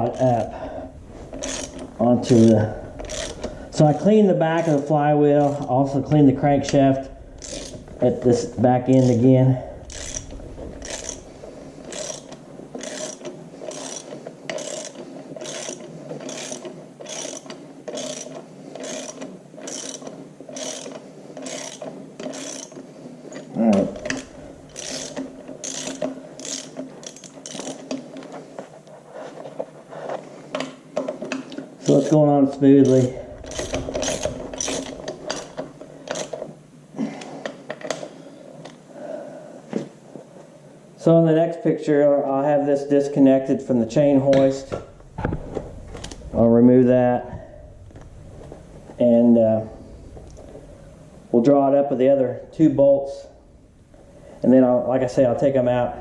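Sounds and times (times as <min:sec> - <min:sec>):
ratchet wrench clicking: 0:01.4 - 0:03.6, 0:07.4 - 0:07.8, 0:09.9 - 0:11.3, 0:11.9 - 0:22.8, 0:24.0 - 0:27.9, 0:32.8 - 0:36.4
metal clicks and clinks: 0:32.8 - 0:36.5.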